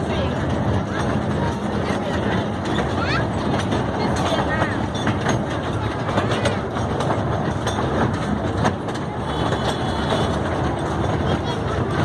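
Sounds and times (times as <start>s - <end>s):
toy train rumbling on track: 0.0s - 12.0s
wheels rattling clicks on rails: 0.0s - 12.0s.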